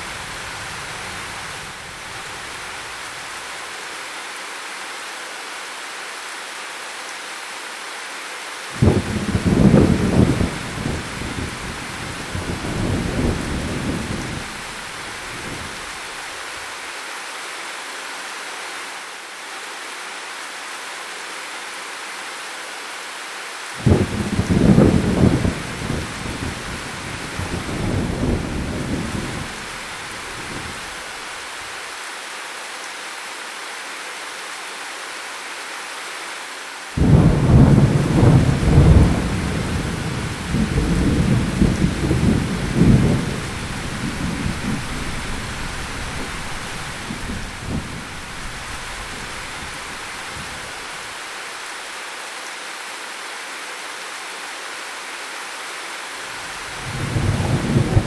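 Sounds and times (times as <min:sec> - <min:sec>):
steady rain: 0:00.0 - 0:58.0
thunder rumbling: 0:08.8 - 0:16.0, 0:23.8 - 0:31.0, 0:37.0 - 0:50.8, 0:56.7 - 0:58.0.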